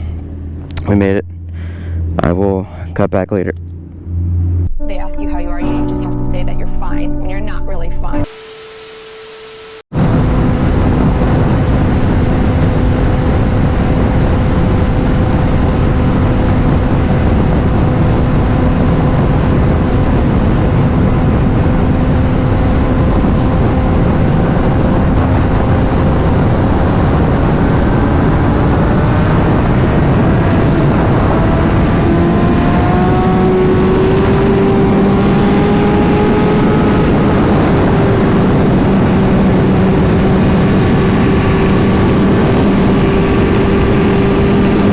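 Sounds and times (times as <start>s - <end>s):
wind and road noise: 0.0s - 4.7s, 9.9s - 44.9s
motorcycle engine accelerating: 0.0s - 4.8s, 8.2s - 44.9s.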